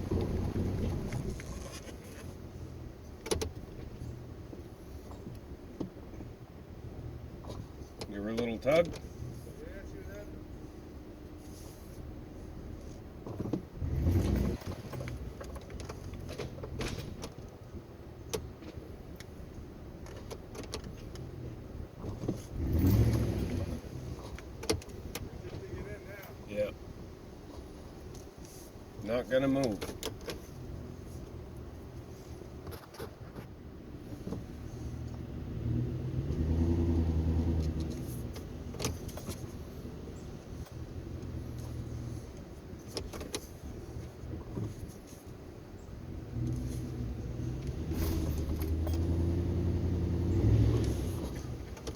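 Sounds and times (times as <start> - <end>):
truck engine revving under load: 0.0 - 1.6, 13.7 - 17.2, 22.2 - 26.0, 34.0 - 44.5, 46.1 - 51.9
light metallic clicks and jingles: 12.8 - 17.6, 46.4 - 49.6
truck engine surging: 46.3 - 51.8.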